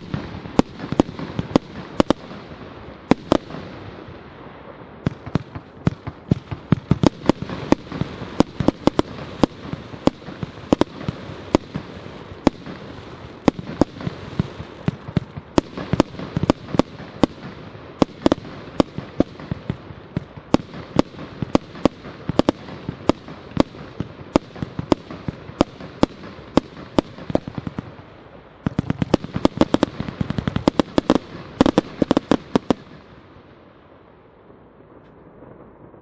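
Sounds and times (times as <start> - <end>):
firework hiss: 0.0 - 33.6
firework cake bangs: 5.0 - 28.0, 28.6 - 33.0.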